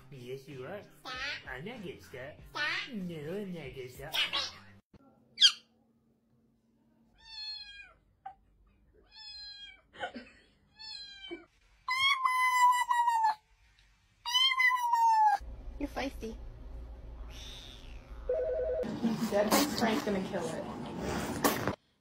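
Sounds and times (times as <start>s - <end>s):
cat meowing: 7.2s - 8.0s, 9.0s - 9.8s, 10.7s - 13.3s, 14.3s - 15.4s, 17.2s - 18.3s.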